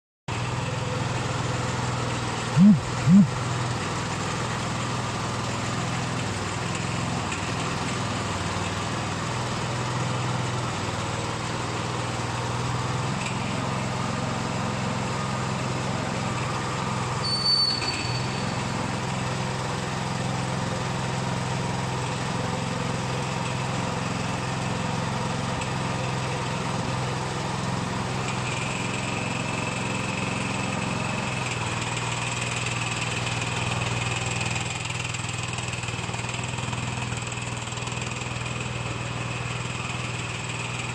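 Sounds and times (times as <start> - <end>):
construction machine engine running: 0.3 - 40.9
high-pitched squeak: 17.2 - 18.6.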